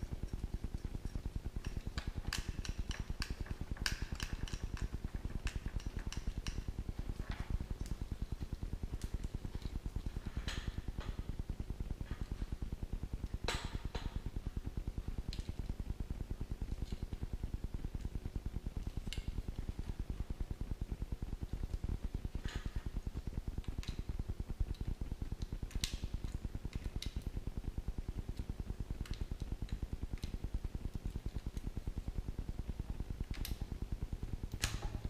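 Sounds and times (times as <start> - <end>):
small hard parts clicking and clinking: 0.0 - 8.0.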